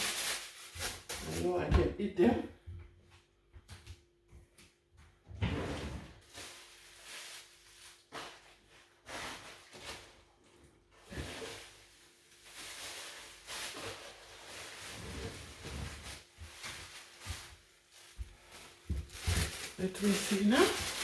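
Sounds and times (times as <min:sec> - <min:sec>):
plastic bags rustling: 0:00.0 - 0:02.0, 0:05.7 - 0:21.0.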